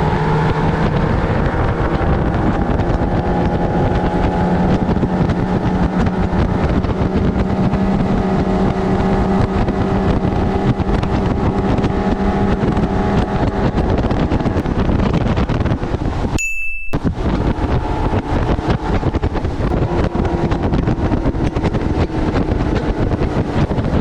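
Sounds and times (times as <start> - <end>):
outboard motor running: 0.0 - 16.4, 17.0 - 24.0
wind: 0.0 - 24.0
water rushing: 17.0 - 24.0.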